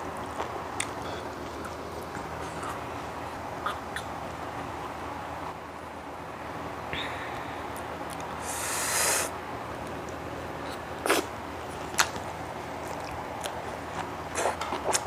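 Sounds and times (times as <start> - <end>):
slurping hiss: 8.4 - 9.4.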